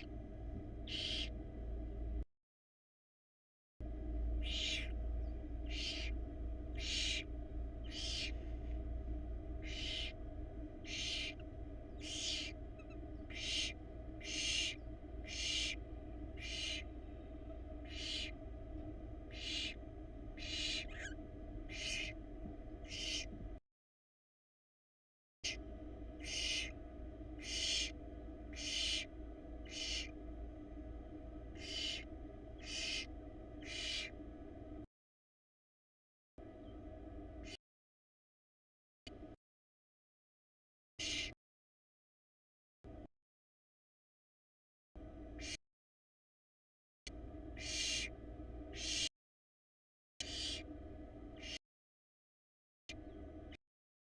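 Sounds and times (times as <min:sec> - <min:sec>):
steady low hum: 0:00.0 - 0:02.3, 0:03.8 - 0:23.6, 0:25.4 - 0:34.9, 0:36.4 - 0:37.6, 0:39.1 - 0:39.4, 0:42.9 - 0:43.1, 0:45.0 - 0:45.6, 0:47.1 - 0:49.1, 0:50.2 - 0:51.6, 0:52.9 - 0:53.6
owl nestlings hissing calls: 0:00.8 - 0:01.3, 0:04.4 - 0:08.6, 0:09.6 - 0:10.2, 0:10.8 - 0:18.4, 0:19.3 - 0:22.2, 0:22.8 - 0:23.3, 0:25.4 - 0:25.6, 0:26.2 - 0:30.2, 0:31.5 - 0:34.2, 0:41.0 - 0:41.4, 0:45.4 - 0:45.6, 0:47.6 - 0:48.1, 0:48.7 - 0:49.1, 0:50.2 - 0:50.7, 0:51.4 - 0:51.6.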